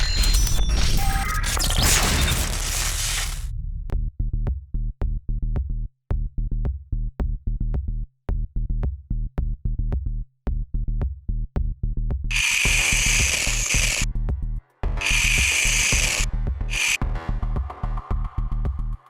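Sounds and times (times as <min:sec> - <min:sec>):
electronic music with drum-machine beat: 0:00.0 - 0:03.5
loud hissing noise: 0:00.2 - 0:03.5.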